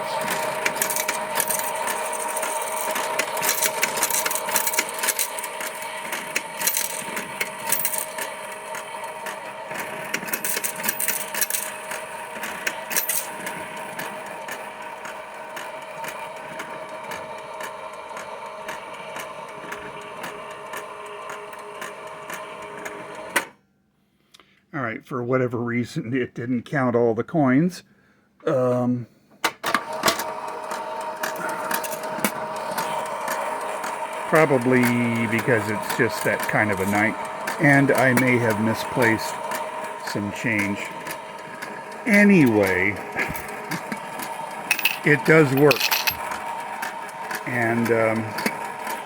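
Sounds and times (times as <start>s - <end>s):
fare box motor whine: 0.0s - 23.5s, 29.8s - 49.0s
coins clicking and rattling: 0.2s - 8.4s, 10.1s - 13.5s, 31.2s - 33.0s, 43.2s - 46.6s.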